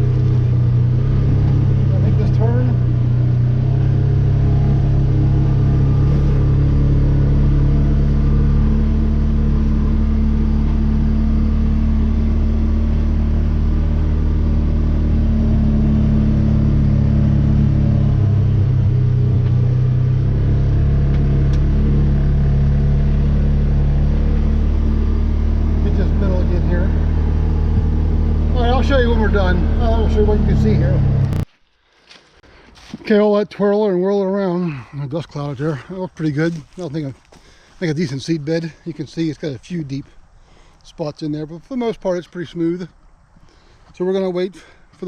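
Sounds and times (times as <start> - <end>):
vehicle engine running under load: 0.0 - 31.5.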